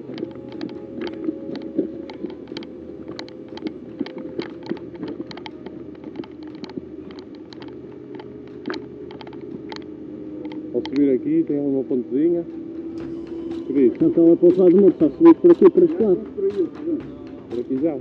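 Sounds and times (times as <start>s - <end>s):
steady low hum: 0.0s - 18.0s.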